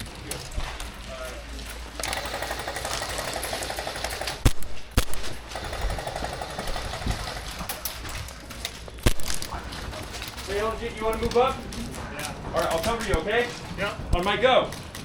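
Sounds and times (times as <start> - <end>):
airsoft guns firing full-auto: 2.0 - 7.8
sharp cracks: 2.0 - 9.6.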